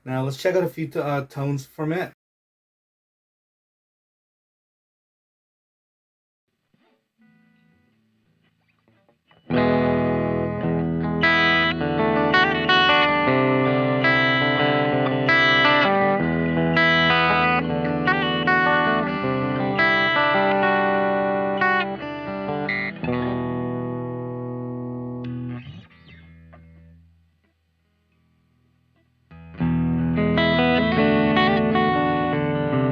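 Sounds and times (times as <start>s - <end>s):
electric guitar chords strummed: 7.2s - 8.6s, 9.3s - 27.2s, 29.3s - 32.9s.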